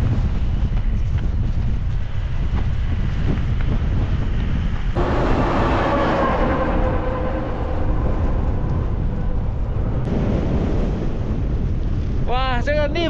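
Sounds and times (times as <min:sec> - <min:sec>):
strong wind buffeting microphone: 0:00.0 - 0:13.0
humming with steady tones: 0:04.8 - 0:10.4.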